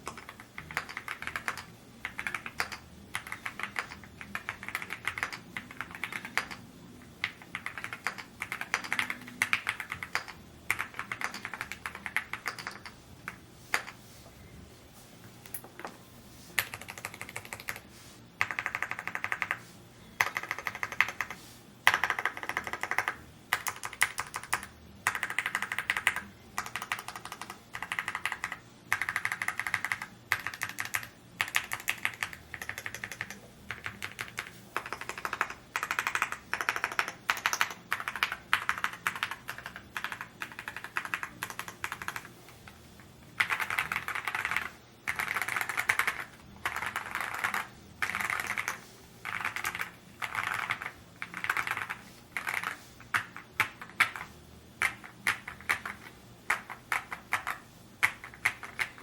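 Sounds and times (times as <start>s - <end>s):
mechanical keyboard typing: 0.0s - 14.0s, 16.6s - 19.6s, 20.2s - 59.0s.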